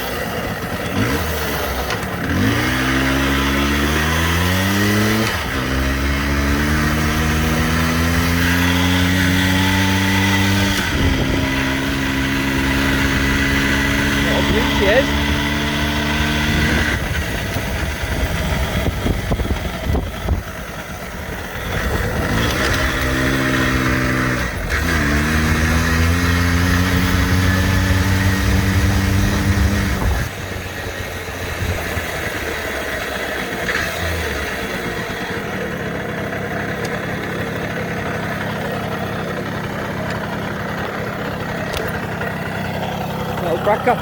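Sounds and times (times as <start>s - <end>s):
two-stroke engine revving and idling: 0.0s - 44.0s.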